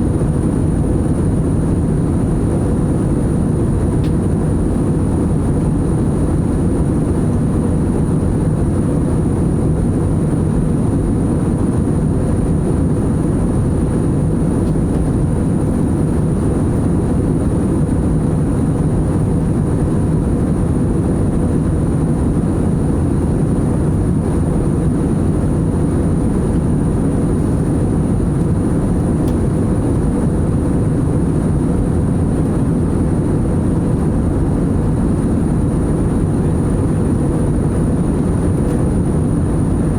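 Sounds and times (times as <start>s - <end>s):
jet cabin engine rush: 0.0s - 39.9s.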